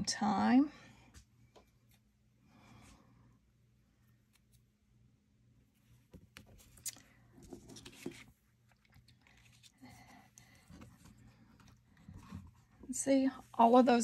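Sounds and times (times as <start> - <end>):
soft paper rustling: 5.6 - 13.6.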